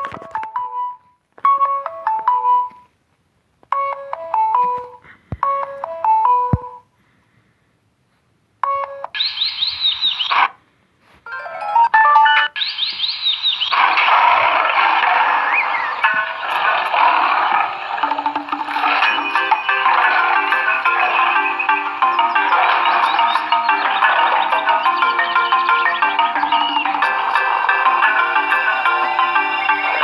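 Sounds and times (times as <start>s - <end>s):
phone ringtone melody: 0.4s - 2.8s, 11.3s - 12.6s, 15.2s - 30.0s
ringtone with falling chirps: 11.3s - 13.9s, 15.2s - 30.0s.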